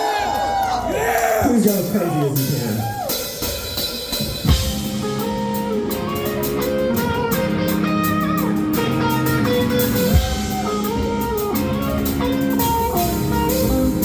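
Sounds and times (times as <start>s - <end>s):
drum kit: 1.2s - 14.0s
electric guitar chords: 1.8s - 14.0s.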